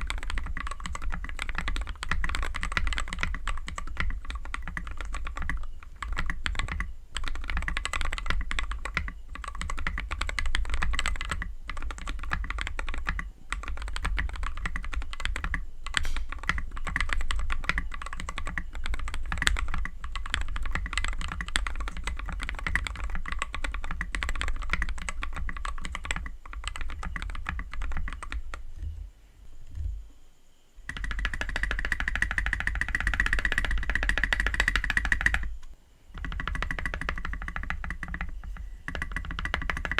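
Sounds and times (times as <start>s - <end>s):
fast mechanical keyboard typing: 0.0s - 28.9s, 30.9s - 35.6s, 36.2s - 39.9s.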